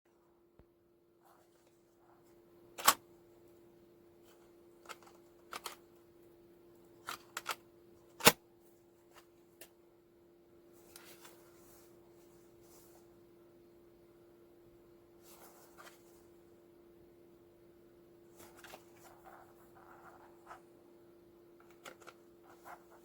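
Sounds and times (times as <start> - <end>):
faint steady hum: 0.1 - 23.0.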